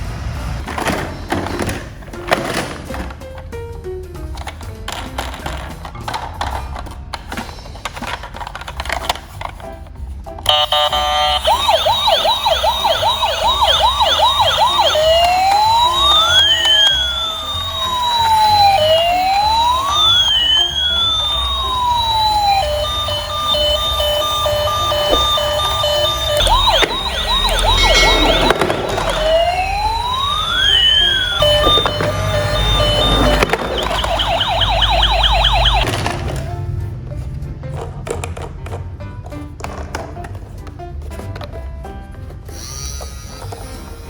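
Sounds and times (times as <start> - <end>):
emergency vehicle siren: 10.5 - 36.3.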